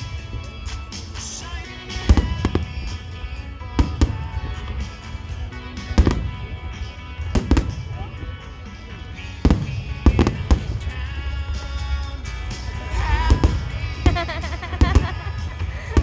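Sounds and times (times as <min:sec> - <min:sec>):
fireworks bursting with sharp bangs: 0:00.0 - 0:16.0
music through outdoor loudspeakers: 0:00.0 - 0:16.0.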